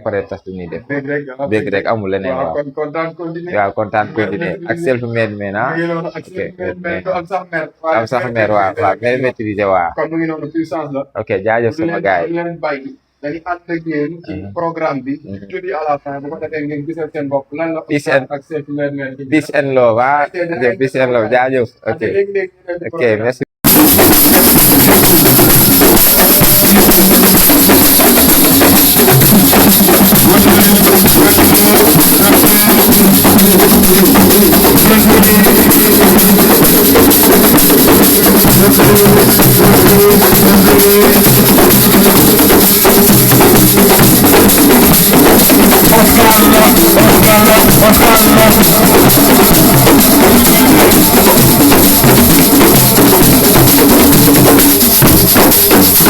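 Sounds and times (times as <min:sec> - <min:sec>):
loud music with drum kit: 0:23.6 - 0:56.0.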